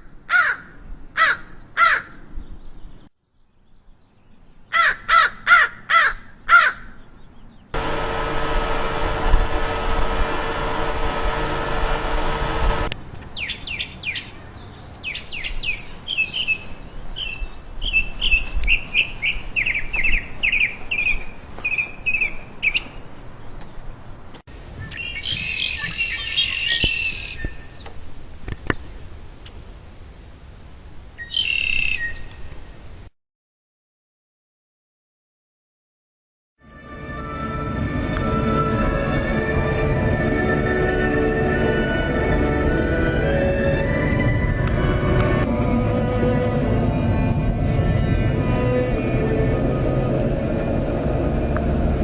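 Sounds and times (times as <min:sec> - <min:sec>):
crow cawing: 0:00.3 - 0:02.2, 0:04.7 - 0:07.0
steady hum-laden noise: 0:07.8 - 0:12.9, 0:36.9 - 0:52.0
songbird chirping: 0:13.2 - 0:24.2, 0:24.8 - 0:29.6, 0:30.8 - 0:32.6.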